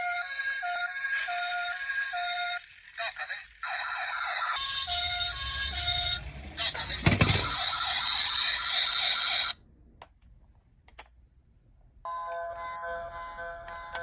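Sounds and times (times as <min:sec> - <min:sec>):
buzzy toy siren: 0:00.0 - 0:09.6
tinkling music tune: 0:04.1 - 0:09.5.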